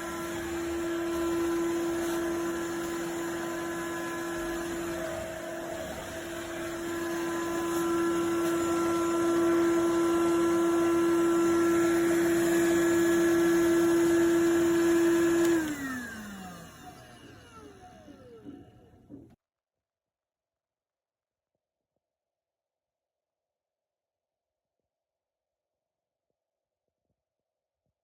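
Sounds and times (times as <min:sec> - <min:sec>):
vacuum motor whining: 0:00.0 - 0:19.4.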